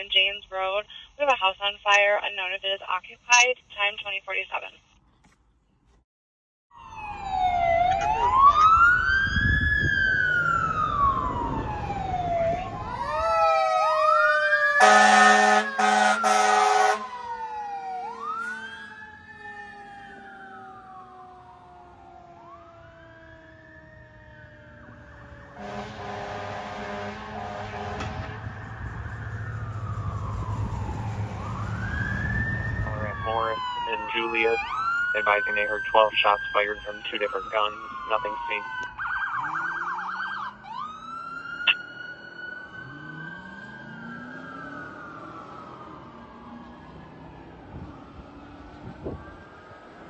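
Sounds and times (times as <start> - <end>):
sirens wailing: 6.7 - 50.0
fire engine air horn blasts: 14.8 - 17.2, 25.5 - 28.6.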